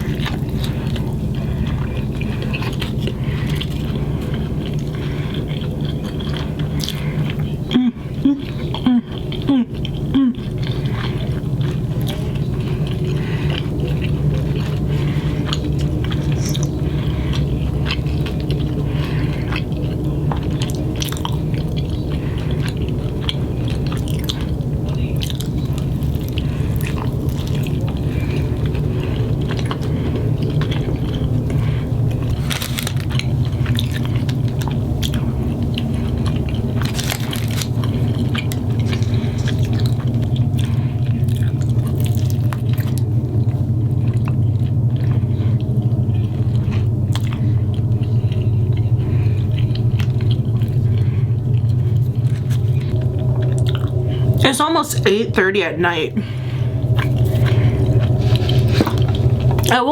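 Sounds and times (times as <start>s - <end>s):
wet mouth clicks: 0.0s - 43.5s
small crunches: 0.0s - 54.4s, 56.2s - 59.8s
chewing and biting food: 0.0s - 55.6s, 56.2s - 59.9s
steady low hum: 0.0s - 59.9s.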